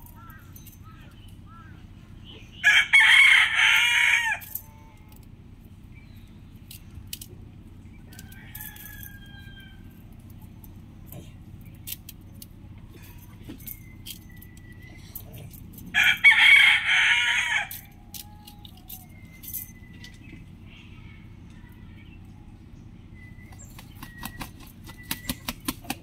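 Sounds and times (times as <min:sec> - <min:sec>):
rooster crowing: 0:02.6 - 0:04.7, 0:08.1 - 0:10.2, 0:15.9 - 0:19.2.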